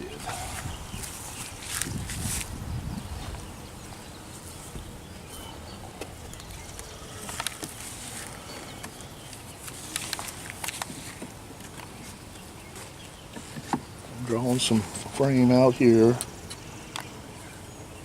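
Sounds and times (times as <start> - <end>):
wind rumbling on microphone: 0.0 - 7.0
honeybees buzzing: 0.0 - 18.0
wooden hive frames clicking: 5.9 - 12.5.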